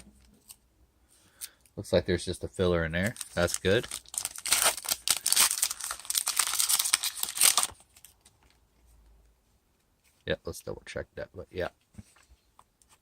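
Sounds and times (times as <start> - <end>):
wrapper crinkling and tearing: 3.0 - 8.4.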